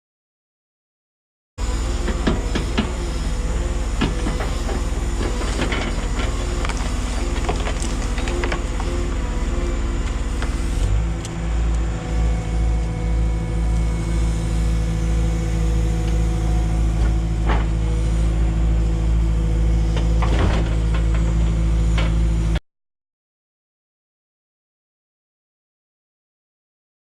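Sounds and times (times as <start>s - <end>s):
excavator diesel engine running: 1.6s - 22.6s.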